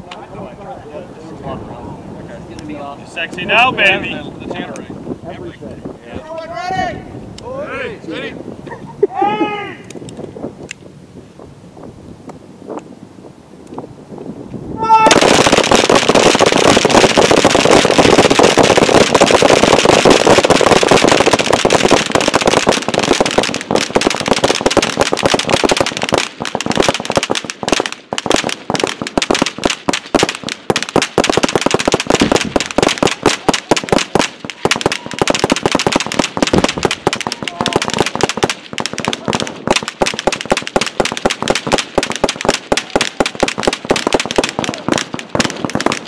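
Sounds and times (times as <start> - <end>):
gunfire volley: 14.8 - 46.0.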